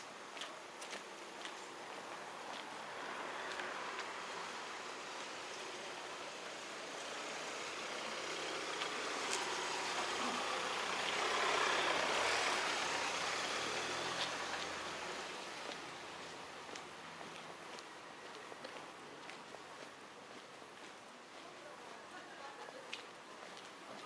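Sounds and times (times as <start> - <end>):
motor vehicle passing: 2.5 - 17.5.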